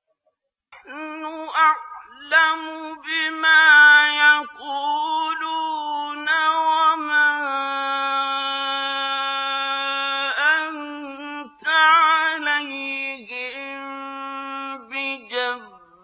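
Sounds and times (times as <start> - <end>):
man chanting melodically: 0.8 - 16.0.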